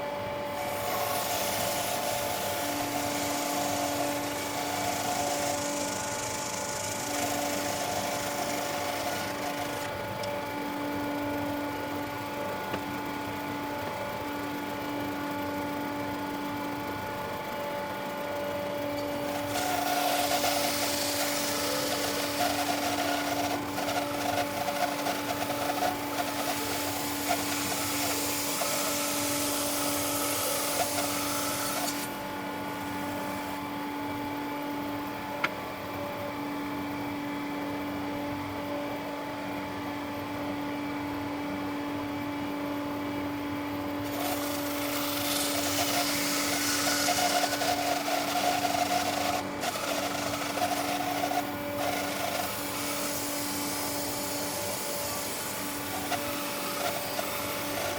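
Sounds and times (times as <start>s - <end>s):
bandsaw motor hum: 0.0s - 35.7s, 43.5s - 57.9s
saw blade cutting log: 0.6s - 9.9s, 19.3s - 32.1s, 44.1s - 57.9s.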